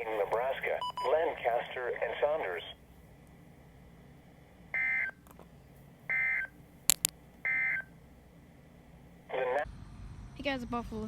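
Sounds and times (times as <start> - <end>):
sharp clicks: 6.9 - 7.2.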